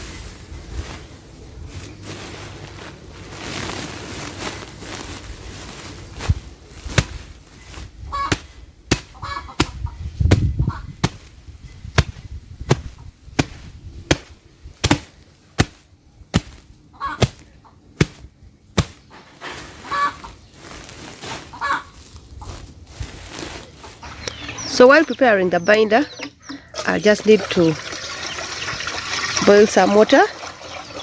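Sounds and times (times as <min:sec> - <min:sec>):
fowl calling: 0:08.1 - 0:08.4, 0:09.2 - 0:09.6, 0:16.9 - 0:17.8, 0:19.8 - 0:20.4, 0:21.4 - 0:22.0
tool pounding lumps: 0:12.0 - 0:15.8.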